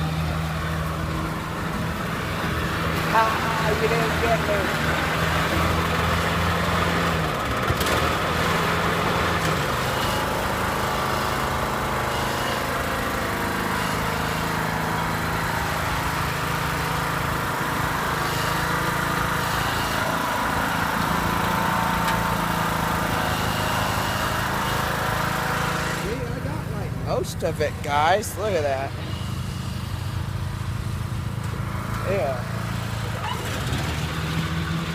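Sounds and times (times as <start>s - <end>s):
riding lawnmower engine running: 0.0s - 34.9s.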